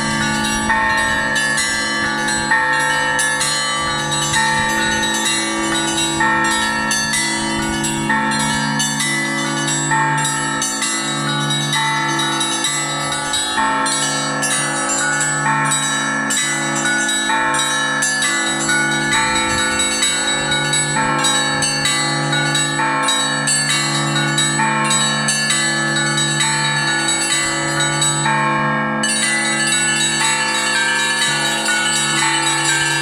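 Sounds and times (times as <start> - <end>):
deep church bell: 0.0 - 33.0
smaller higher bells ringing: 0.0 - 33.0.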